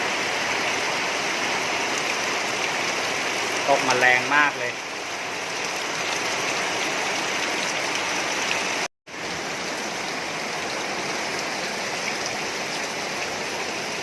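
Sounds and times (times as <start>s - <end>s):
heavy rain pouring: 0.0s - 14.0s.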